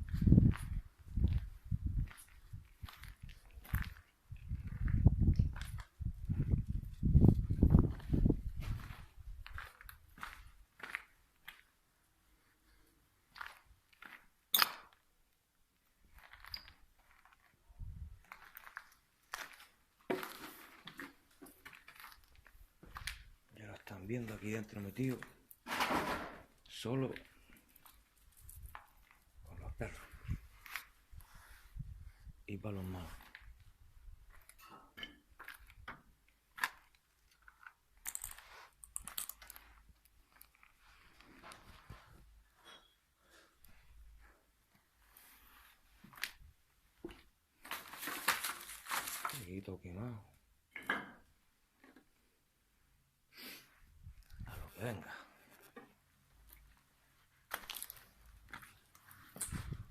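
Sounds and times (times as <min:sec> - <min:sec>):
footsteps crunching on debris: 0:00.0 - 0:11.7, 0:18.2 - 0:25.4, 0:47.0 - 0:49.5, 0:57.4 - 0:59.9.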